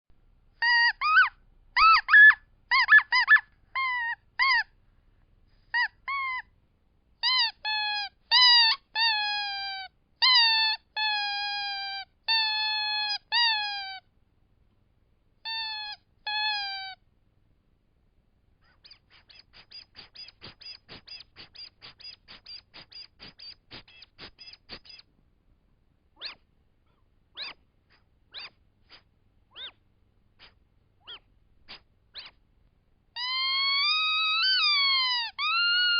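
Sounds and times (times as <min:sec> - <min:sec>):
squeaky rubber toys squeaking: 0:00.6 - 0:04.8, 0:05.6 - 0:06.5, 0:07.2 - 0:14.0, 0:15.4 - 0:17.0, 0:18.6 - 0:25.1, 0:26.2 - 0:29.8, 0:30.4 - 0:32.4, 0:33.2 - 0:35.9.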